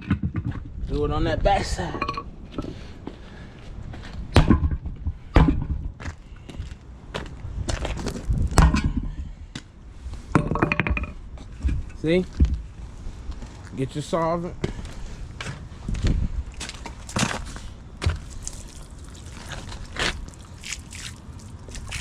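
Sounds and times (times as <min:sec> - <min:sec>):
hammer thuds on truck tire: 0:04.4 - 0:06.0.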